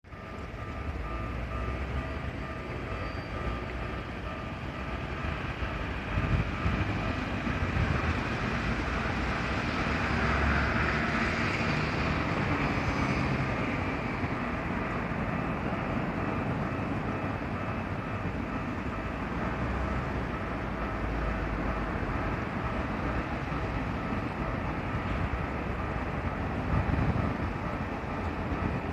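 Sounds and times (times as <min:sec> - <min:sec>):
level-crossing warning bell: 0:00.0 - 0:28.9
train running over crossing: 0:00.0 - 0:28.9.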